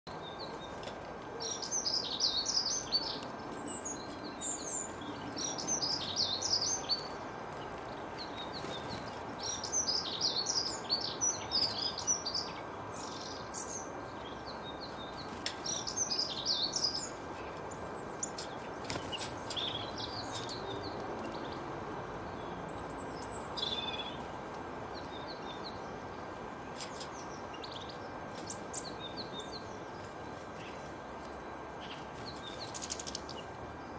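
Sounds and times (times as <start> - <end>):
outdoor background noise: 0.0 - 33.9
songbird twittering: 0.1 - 21.6.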